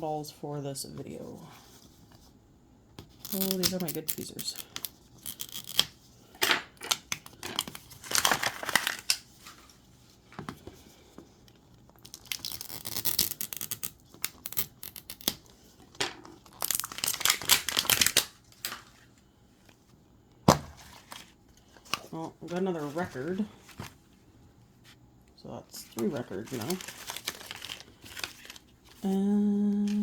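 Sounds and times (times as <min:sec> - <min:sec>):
plastic wrapping tearing and crinkling: 0:03.2 - 0:05.9, 0:07.6 - 0:09.3, 0:12.0 - 0:15.5, 0:16.2 - 0:18.9, 0:25.8 - 0:28.9.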